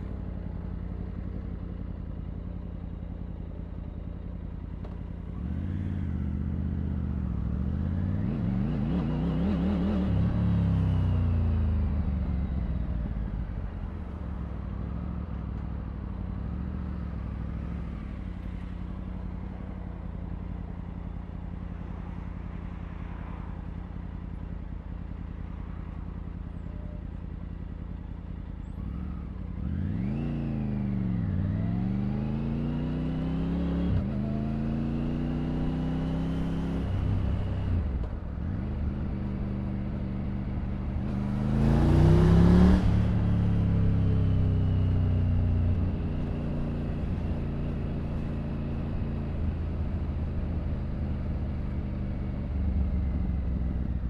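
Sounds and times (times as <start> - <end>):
motorcycle engine revving: 5.2 - 13.7, 28.6 - 54.0.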